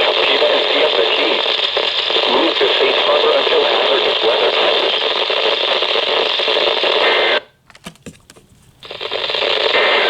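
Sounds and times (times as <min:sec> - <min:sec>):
radio static hiss: 0:00.0 - 0:07.5, 0:08.6 - 0:10.0
clicks: 0:07.7 - 0:09.0.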